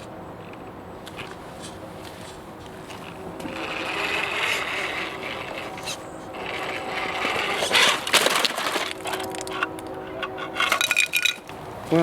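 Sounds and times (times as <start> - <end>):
rc car motor whirring: 2.9 - 10.8.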